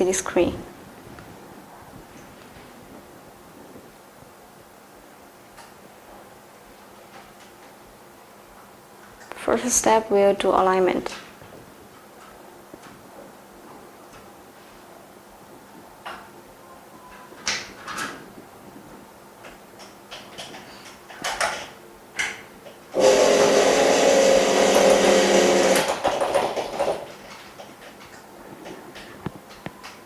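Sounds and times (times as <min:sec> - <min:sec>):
small machine humming: 0:22.9 - 0:27.1.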